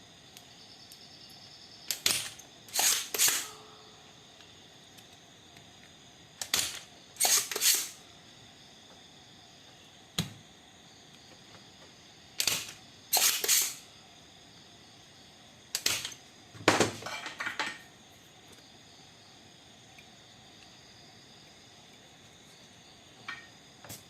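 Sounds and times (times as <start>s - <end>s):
sharp mechanical snaps and clatter: 1.9s - 3.5s, 6.4s - 8.0s, 12.4s - 13.8s, 15.7s - 16.2s.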